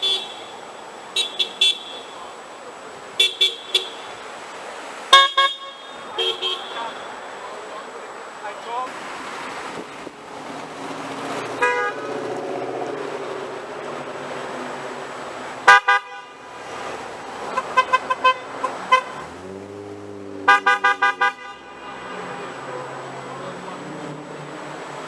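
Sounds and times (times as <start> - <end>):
car horns honking: 0.0 - 2.4, 3.1 - 4.3, 5.1 - 7.6, 11.4 - 12.3, 15.6 - 24.2
steady traffic: 0.0 - 25.0.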